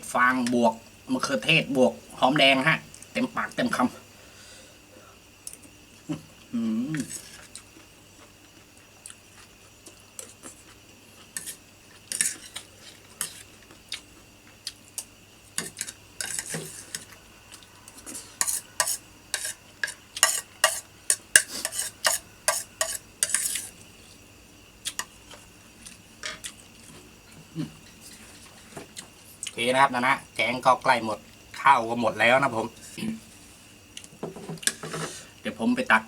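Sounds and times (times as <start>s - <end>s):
metal spoon scraping a plate: 11.4s - 13.4s, 15.6s - 17.1s, 18.0s - 23.7s.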